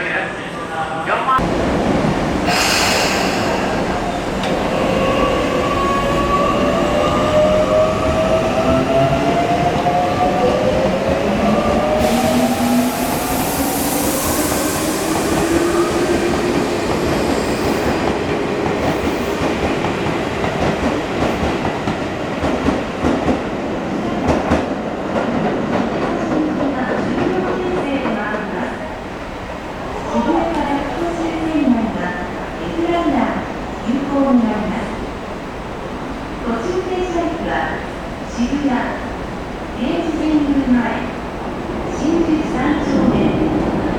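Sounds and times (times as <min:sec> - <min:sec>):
burst of hiss: 0:02.4 - 0:04.0.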